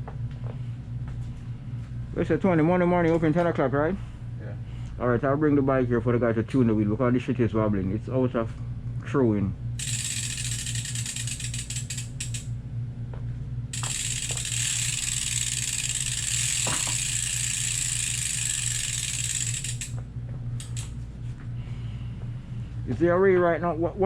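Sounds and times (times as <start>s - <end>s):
low steady hum: 0.0s - 24.0s
bicycle freehub ratcheting: 9.8s - 12.5s, 13.7s - 20.0s, 20.6s - 21.0s.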